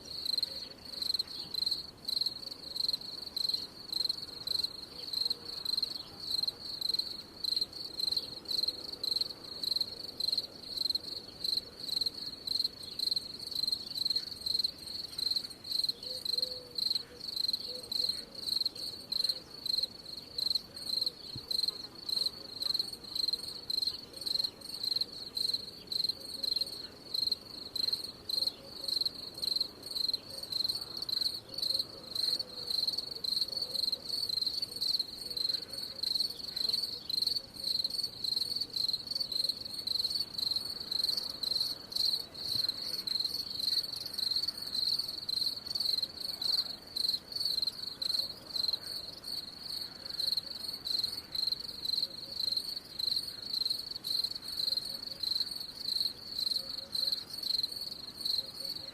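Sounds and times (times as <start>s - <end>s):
cricket chirping: 0.0s - 58.9s.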